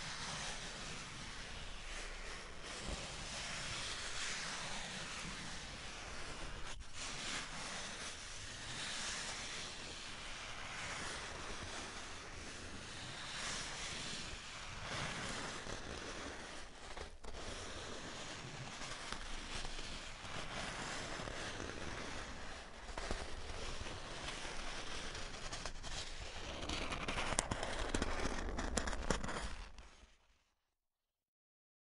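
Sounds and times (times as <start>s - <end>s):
styrofoam crackling and squeaking: 26.4s - 30.1s.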